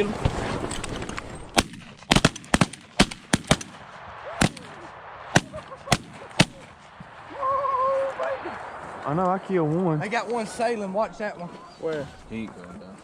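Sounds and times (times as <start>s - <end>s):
shotgun blasts: 1.4s - 7.4s.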